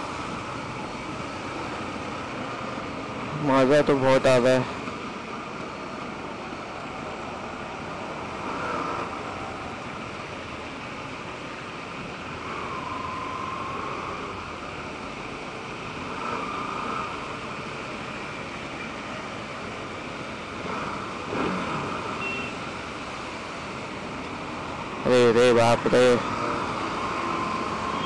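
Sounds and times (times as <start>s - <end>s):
traffic and wet road rush: 0.0s - 28.0s.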